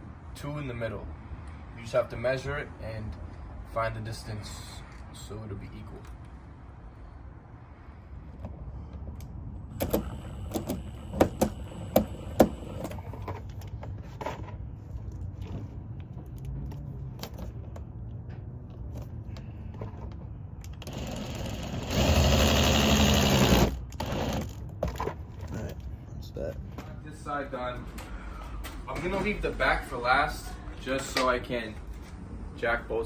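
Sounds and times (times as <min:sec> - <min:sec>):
power drill driving a screw: 0:20.8 - 0:24.6.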